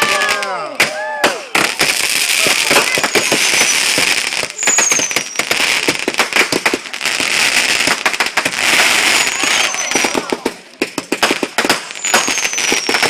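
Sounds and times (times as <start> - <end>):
fireworks crackling pops: 0.0 - 13.0
firework whistle: 0.9 - 6.0, 8.7 - 10.4, 12.0 - 13.0.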